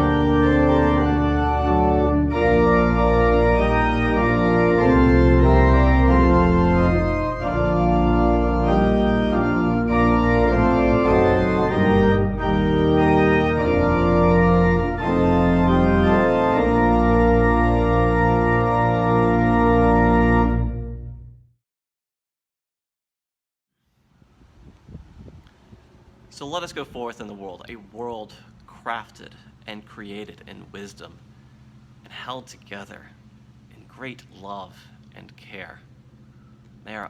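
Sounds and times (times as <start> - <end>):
organ playing sustained chords: 0.0 - 21.5.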